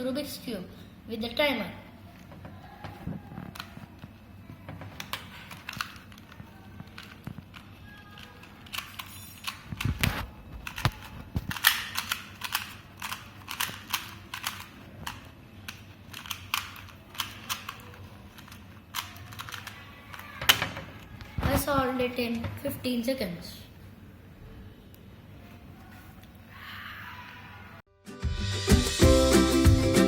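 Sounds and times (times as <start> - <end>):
puzzle cube clicking turns: 4.9 - 20.4.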